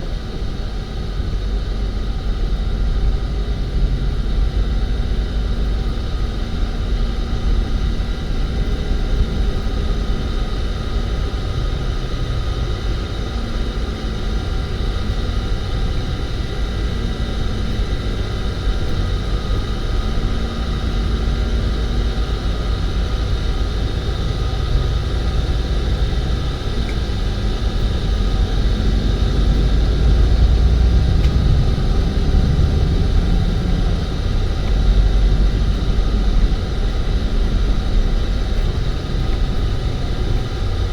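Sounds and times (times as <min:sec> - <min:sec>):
vehicle engine and road noise: 0:24.4 - 0:40.6.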